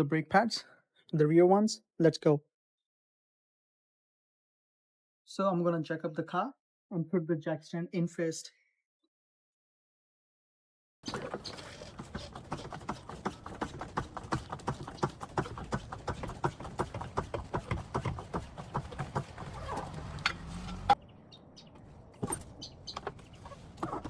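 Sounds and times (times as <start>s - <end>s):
car jack clicking: 17.3s - 21.0s.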